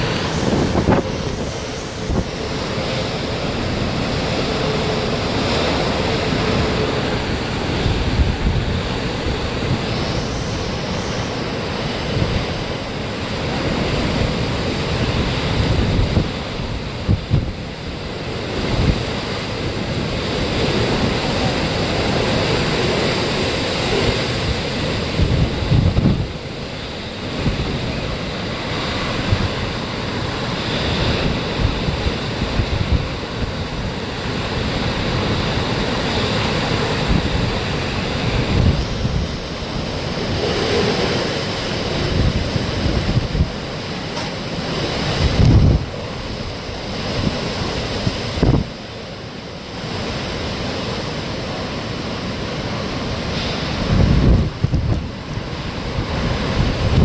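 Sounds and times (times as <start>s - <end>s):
hurricane wind: 0.0s - 57.0s
rain: 0.0s - 57.0s
wind buffeting microphone: 0.0s - 57.0s.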